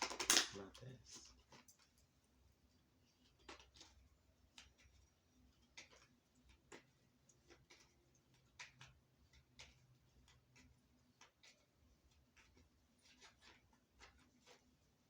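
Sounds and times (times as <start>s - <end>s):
tarot cards clicking and tapping: 0.0s - 0.6s, 5.6s - 14.7s.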